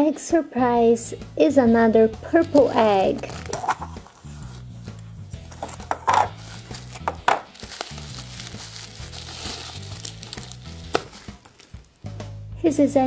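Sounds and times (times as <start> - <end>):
quiet background music: 0.0 - 13.0
crinkling: 2.2 - 12.1
plastic egg clicks: 2.4 - 12.0.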